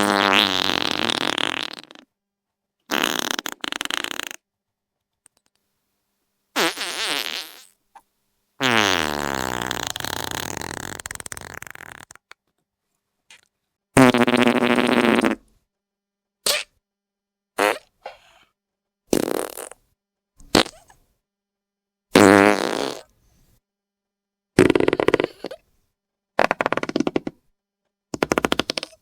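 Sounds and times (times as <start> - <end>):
wet fart sound effects: 0.0 - 2.1, 2.9 - 4.4, 6.6 - 7.8, 8.6 - 12.2, 14.0 - 15.4, 16.4 - 16.7, 17.6 - 18.2, 19.1 - 19.8, 20.4 - 21.0, 22.1 - 23.1, 24.6 - 25.6, 26.4 - 27.4, 28.2 - 29.0.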